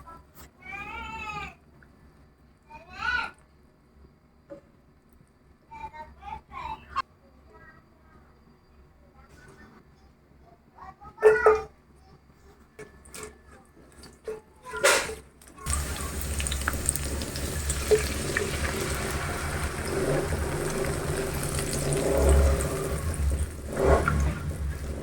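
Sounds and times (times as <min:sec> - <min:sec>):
water running from a tap: 0:15.4 - 0:25.0.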